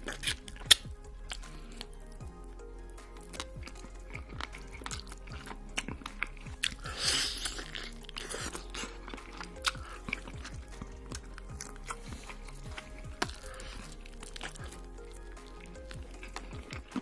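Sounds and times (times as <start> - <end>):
background music with steady beat: 0.0 - 17.0
chewing and crunching food: 0.0 - 17.0.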